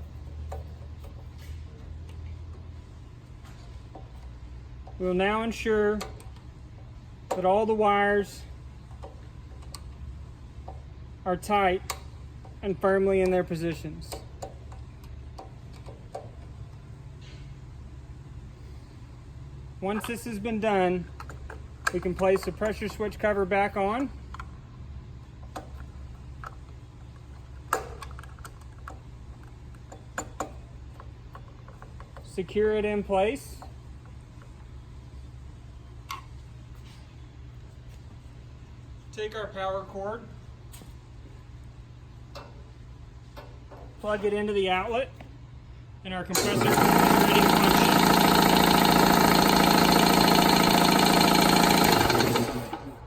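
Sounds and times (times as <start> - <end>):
electric air compressor running: 46.3 - 53.0.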